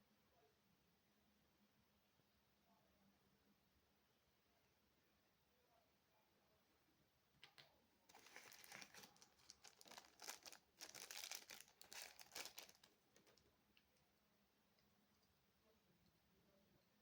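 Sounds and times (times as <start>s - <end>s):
packaging crinkling: 8.1s - 13.5s.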